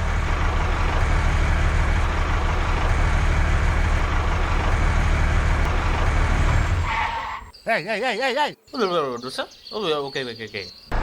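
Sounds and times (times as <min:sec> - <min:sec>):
vehicle engine rumbling: 0:00.0 - 0:07.5.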